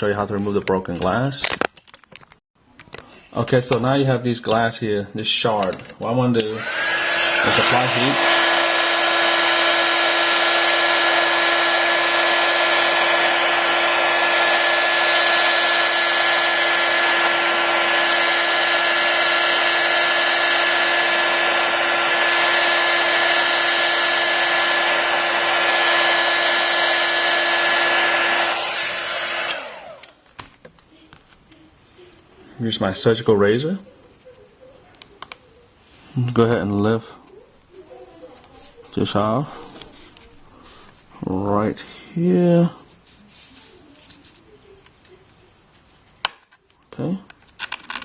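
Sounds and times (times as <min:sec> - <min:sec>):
hot-air blower whining: 0:06.4 - 0:30.2.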